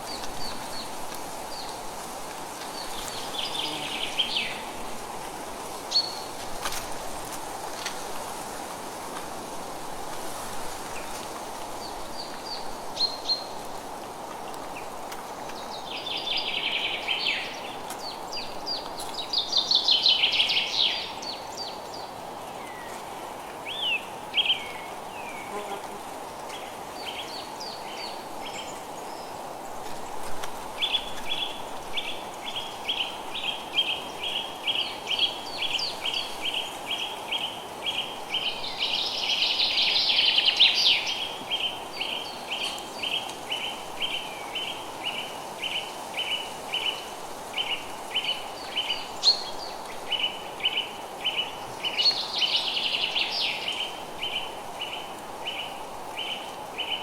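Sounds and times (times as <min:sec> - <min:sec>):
rain hiss: 0:00.0 - 0:57.0.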